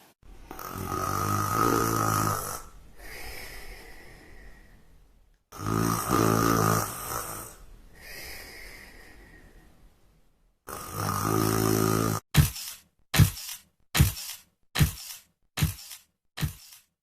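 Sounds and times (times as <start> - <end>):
person snoring heavily: 0.4 - 4.7, 5.5 - 9.5, 10.6 - 12.3.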